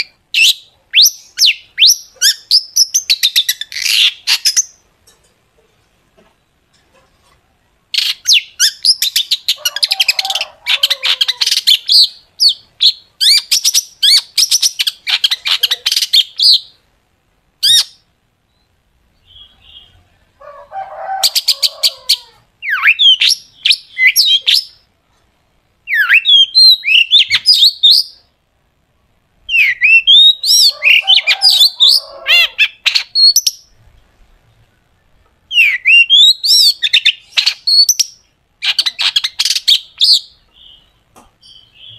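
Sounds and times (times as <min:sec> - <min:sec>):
shrike singing: 0:29.5 - 0:33.8.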